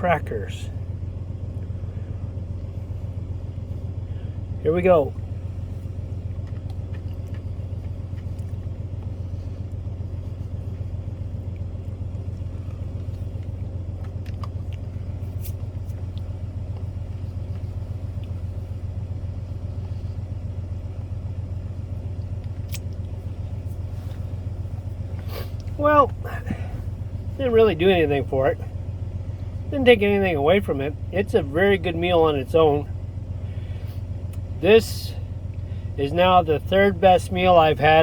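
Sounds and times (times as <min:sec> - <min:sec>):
low hum: 0:00.0 - 0:38.0
crackers being chewed: 0:05.9 - 0:18.6.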